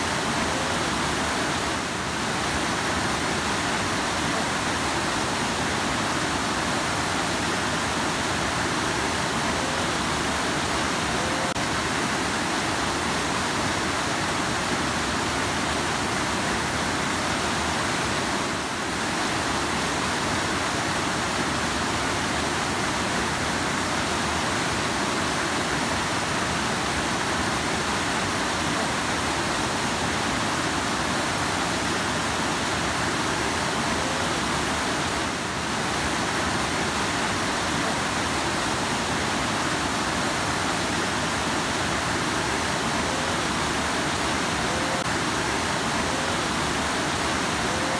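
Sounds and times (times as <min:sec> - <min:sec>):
river water rushing: 0:00.0 - 0:47.9.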